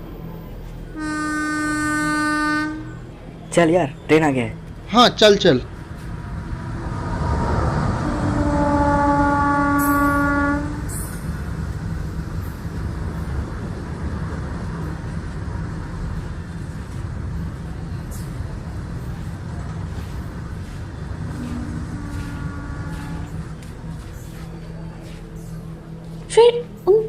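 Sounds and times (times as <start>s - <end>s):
train rumbling on rails: 0.0s - 27.0s
train horn: 0.9s - 3.2s, 6.9s - 11.3s, 21.0s - 24.8s.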